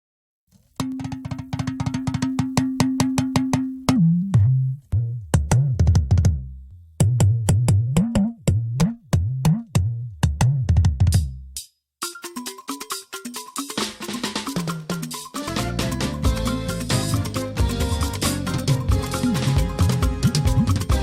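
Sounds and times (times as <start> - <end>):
drum machine beats: 0.8 - 21.0
synthesizer bass line: 15.4 - 21.0.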